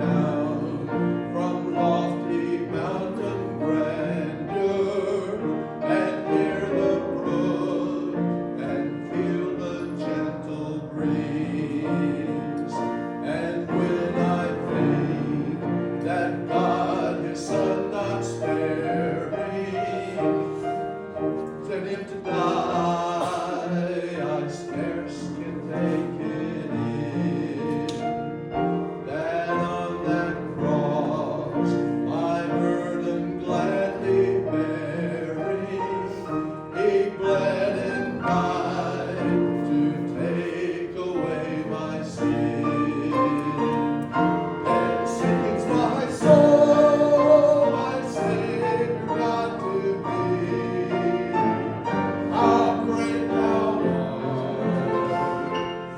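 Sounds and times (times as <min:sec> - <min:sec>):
musical accompaniment: 0:00.0 - 0:55.9
person singing: 0:44.6 - 0:55.6.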